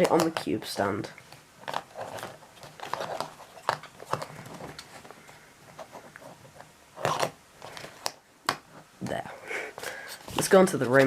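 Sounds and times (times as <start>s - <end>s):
plastic cube clicks and rustles: 0.0s - 8.8s.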